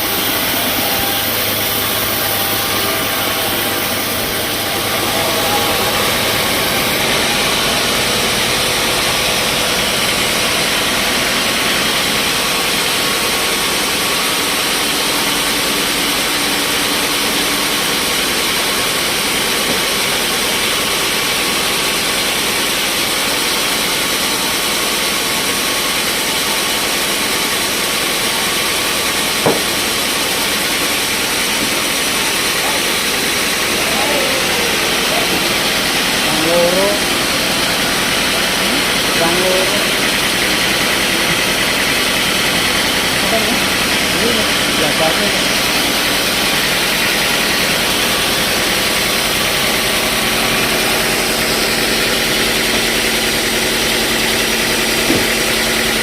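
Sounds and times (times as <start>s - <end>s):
sawmill saw running: 0.0s - 56.0s
sharp knock: 29.4s - 29.9s.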